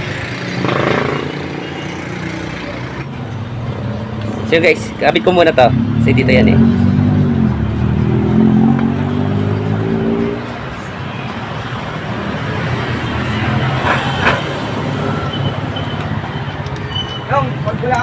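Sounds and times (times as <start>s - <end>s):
vehicle engine droning: 0.0s - 10.9s
road traffic: 0.0s - 18.0s.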